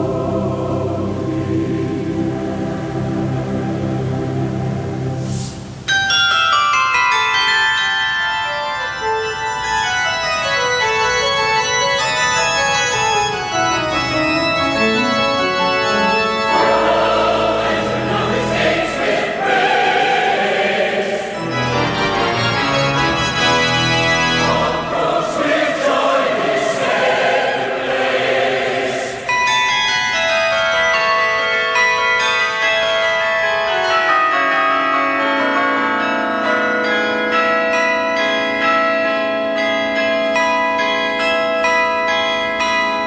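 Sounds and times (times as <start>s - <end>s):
organ and choir music: 0.0s - 43.0s
carillon bells ringing: 5.9s - 19.4s, 29.2s - 43.0s.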